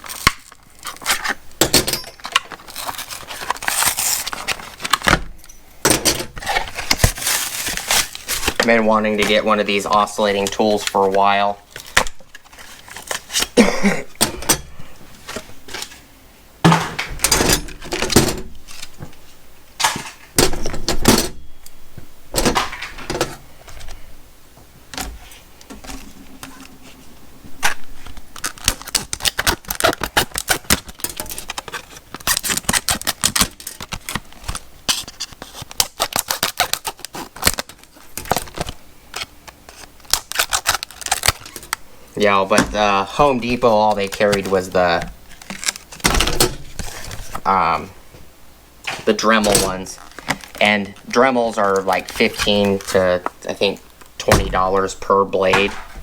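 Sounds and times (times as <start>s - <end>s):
blades and packaging clattering: 0.0s - 13.6s, 27.6s - 47.8s, 48.8s - 56.0s.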